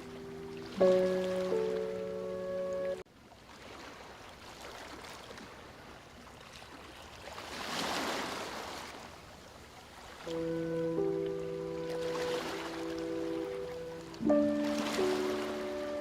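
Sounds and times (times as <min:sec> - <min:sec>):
soft music: 0:00.0 - 0:03.0, 0:10.3 - 0:16.0
sea waves surf: 0:00.0 - 0:16.0.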